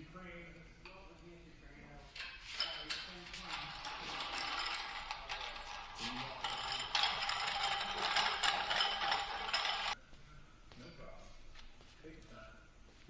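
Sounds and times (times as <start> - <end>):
dense mechanical rattling: 2.2 - 10.0.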